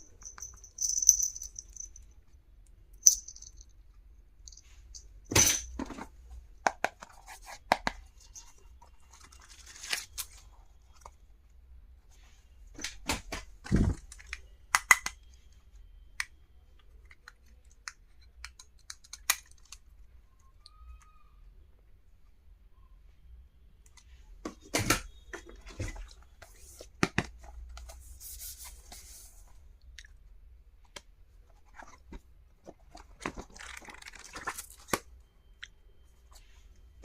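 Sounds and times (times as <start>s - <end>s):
small items clicking and tapping: 3.0s - 3.6s.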